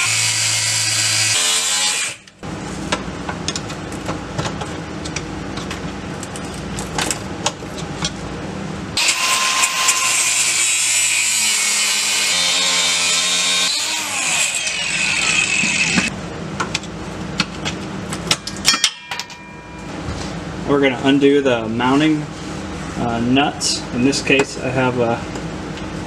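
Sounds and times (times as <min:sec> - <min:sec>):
grinder cutting metal: 0:00.0 - 0:02.3, 0:09.0 - 0:16.1.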